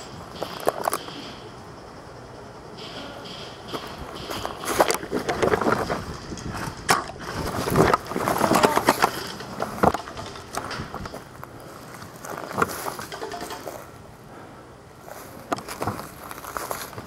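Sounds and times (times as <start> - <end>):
rustling and crackling: 3.7 - 14.0, 15.0 - 17.0.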